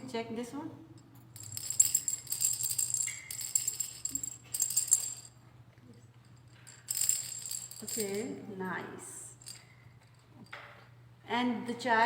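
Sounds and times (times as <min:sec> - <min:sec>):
shaken cylinder rattling: 0:01.3 - 0:05.3, 0:06.3 - 0:08.4, 0:09.3 - 0:10.2.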